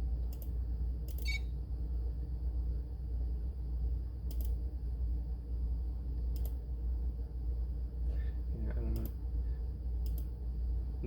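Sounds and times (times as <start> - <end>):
steady low hum: 0.0 - 11.0
computer mouse clicks: 0.3 - 1.4, 4.2 - 4.6, 6.3 - 6.6, 10.0 - 10.3.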